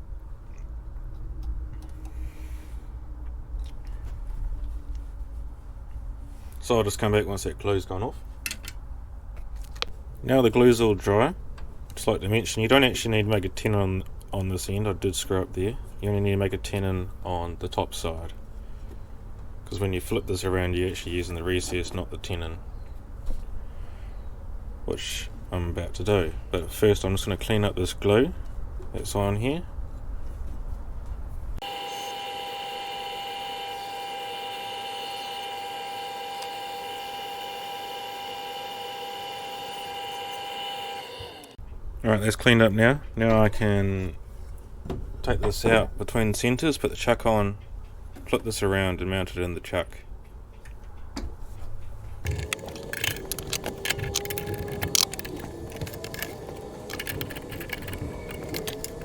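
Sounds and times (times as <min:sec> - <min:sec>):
wood lathe motor whining: 0:31.6 - 0:41.6, 0:52.2 - 0:59.0
metal clicks and clanks: 0:50.5 - 0:59.0.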